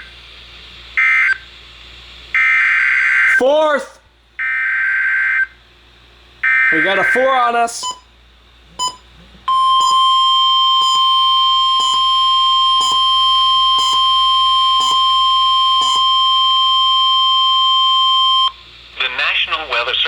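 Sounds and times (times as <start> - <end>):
steady single-pitched alarm beep: 7.8 - 8.1, 8.8 - 18.6.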